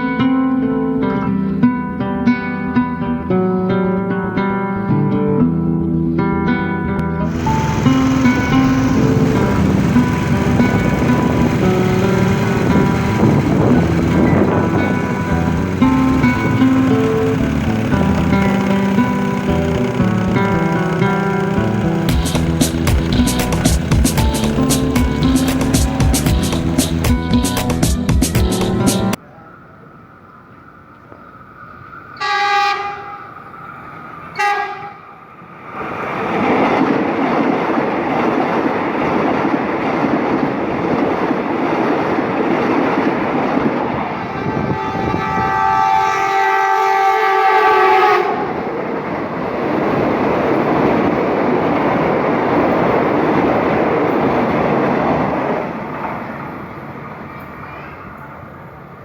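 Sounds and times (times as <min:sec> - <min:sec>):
train wheels rumbling on rails: 0:07.2 - 0:29.2, 0:32.7 - 0:59.0
train horn blasts: 0:07.3 - 0:25.7, 0:32.2 - 0:33.5, 0:34.3 - 0:35.3, 0:44.1 - 0:48.7.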